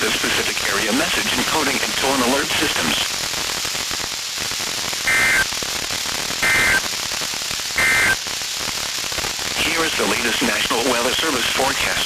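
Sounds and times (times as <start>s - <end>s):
radio static: 0.0s - 3.1s, 5.0s - 5.6s, 6.3s - 6.9s, 7.8s - 8.2s, 9.6s - 12.0s
short data bursts: 5.0s - 5.6s, 6.4s - 6.9s, 7.8s - 8.2s.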